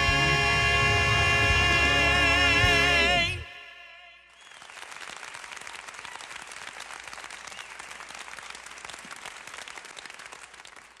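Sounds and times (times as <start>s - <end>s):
audience applauding: 4.4s - 11.0s.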